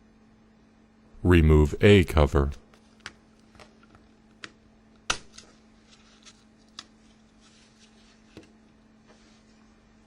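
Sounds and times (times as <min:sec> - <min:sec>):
faint steady hum: 0:00.0 - 0:10.0.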